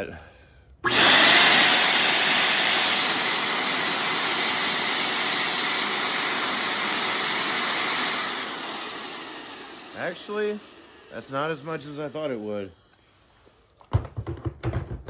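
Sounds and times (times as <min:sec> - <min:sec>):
vacuum blower rush of air: 0:00.8 - 0:12.3.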